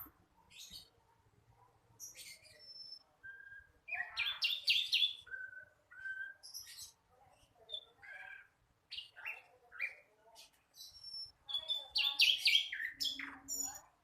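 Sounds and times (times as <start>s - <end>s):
bird chirping and twittering: 0.0s - 1.0s, 1.9s - 14.0s
bird whistles: 3.2s - 6.8s.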